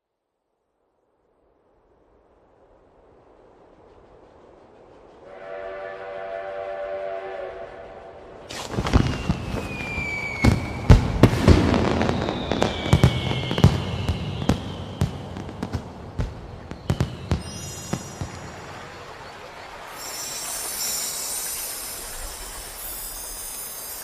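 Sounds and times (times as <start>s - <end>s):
whistling firework shells: 8.4s - 24.0s
fireworks cracks and bangs: 8.5s - 24.0s.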